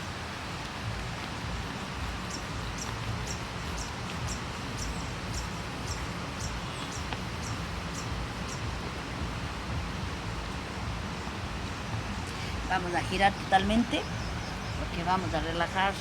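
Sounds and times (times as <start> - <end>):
background hiss and low rumble: 0.0 - 16.0
small bird chirping: 1.1 - 8.8, 12.1 - 15.7.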